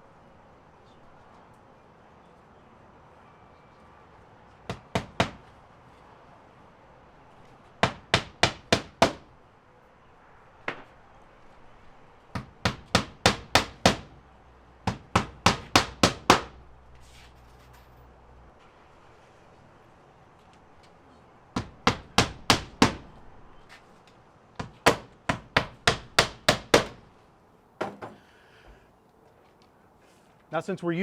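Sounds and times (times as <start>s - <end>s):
hammer driving nails: 4.7s - 5.5s, 7.8s - 9.3s, 12.3s - 14.2s, 14.8s - 16.6s, 21.6s - 23.2s, 24.6s - 27.0s.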